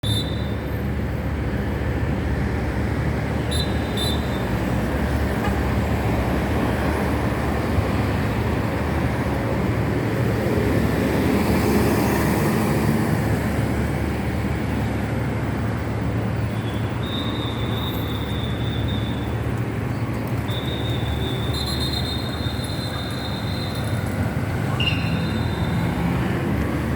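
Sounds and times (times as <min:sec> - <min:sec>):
high brake squeals: 0:00.0 - 0:00.8, 0:16.5 - 0:19.5, 0:20.4 - 0:24.0, 0:24.7 - 0:26.1
passing cars: 0:00.0 - 0:26.9.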